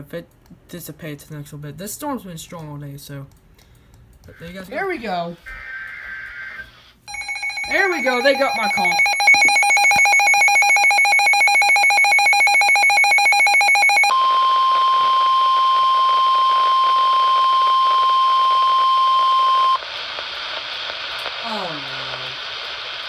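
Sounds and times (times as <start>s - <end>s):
steady attention tone: 4.3s - 19.8s
pulsing electronic alarm beep: 7.1s - 15.3s.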